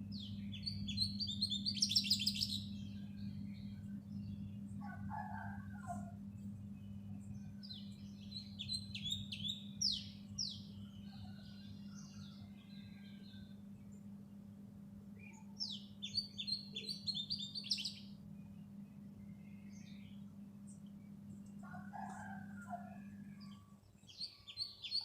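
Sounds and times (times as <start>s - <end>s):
steady low hum: 0.0s - 24.7s
sparrow chirping: 0.1s - 4.4s, 6.9s - 13.4s, 15.2s - 18.2s.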